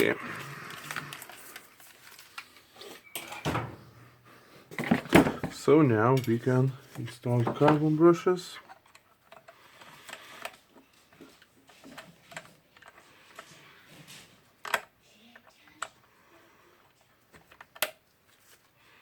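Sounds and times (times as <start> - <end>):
quiet handling and rustling: 4.7 - 18.8.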